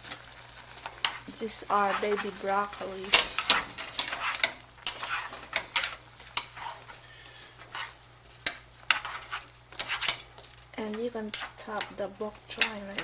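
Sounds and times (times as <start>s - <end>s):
utensil scraping a pot: 3.1s - 10.5s.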